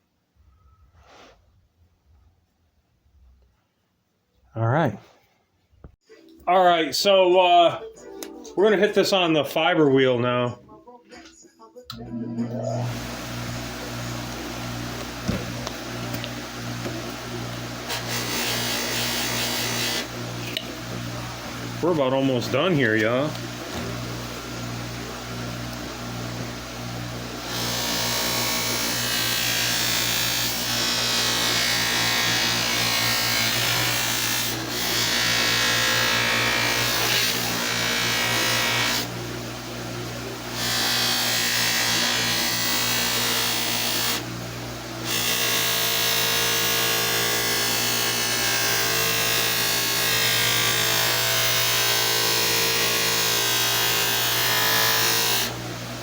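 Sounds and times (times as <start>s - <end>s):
grinder motor hum: 12.1s - 56.0s
pliers grinding on bench grinder: 12.6s - 39.2s, 40.4s - 55.6s.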